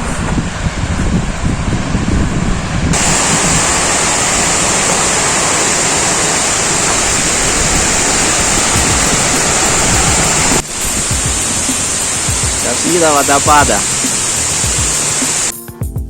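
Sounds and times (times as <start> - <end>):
waterfall rushing: 2.8 - 15.5.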